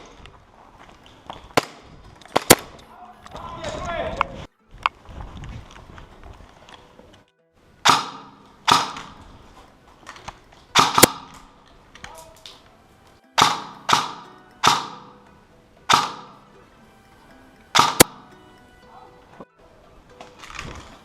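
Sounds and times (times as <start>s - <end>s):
sharp shot-like bangs: 7.8s - 9.2s, 10.8s - 11.4s, 13.4s - 15.1s, 15.9s - 16.4s, 17.8s - 18.2s.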